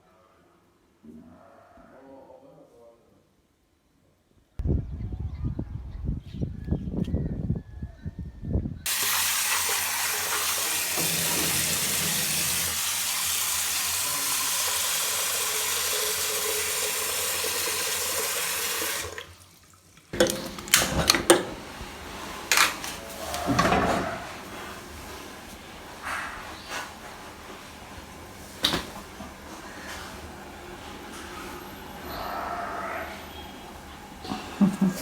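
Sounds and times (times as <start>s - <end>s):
water running: 8.9s - 32.2s, 33.0s - 35.0s.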